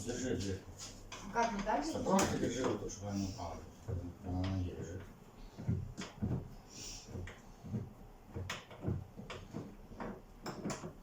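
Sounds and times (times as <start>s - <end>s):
refrigerator door knocks and clicks: 7.2s - 11.0s.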